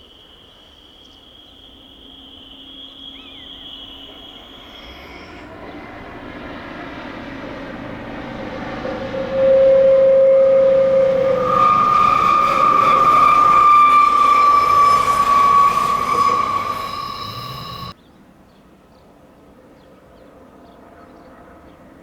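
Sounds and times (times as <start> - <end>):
loud steady tone: 0.0 - 18.0
train rumble: 3.0 - 18.0
faint high tone: 9.2 - 17.9.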